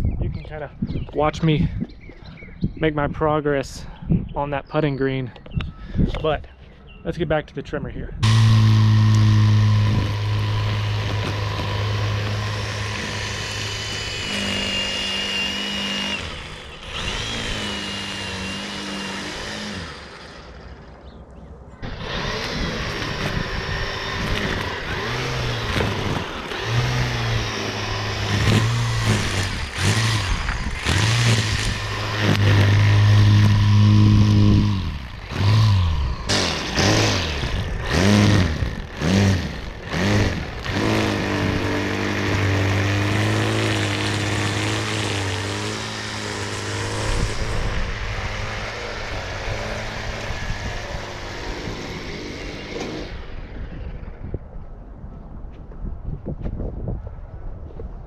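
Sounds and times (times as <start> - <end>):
string trimmer motor humming: 8.2 - 21.0, 21.8 - 54.3.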